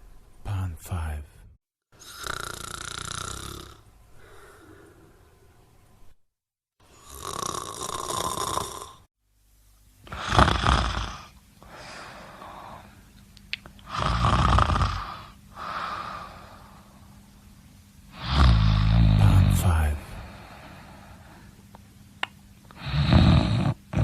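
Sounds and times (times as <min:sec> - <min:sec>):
person snoring: 0:02.0 - 0:05.2, 0:06.9 - 0:09.1, 0:10.0 - 0:13.0, 0:13.8 - 0:17.0, 0:18.1 - 0:21.5, 0:22.7 - 0:24.0.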